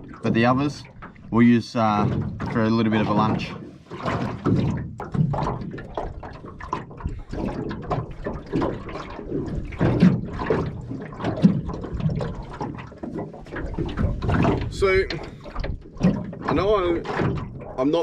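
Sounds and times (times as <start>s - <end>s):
water sloshing and splashing: 0.0s - 18.0s.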